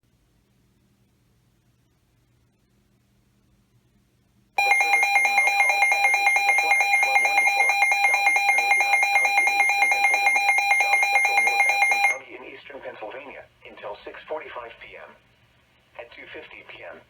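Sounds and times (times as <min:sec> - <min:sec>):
pulsing electronic alert tone: 0:04.6 - 0:12.2.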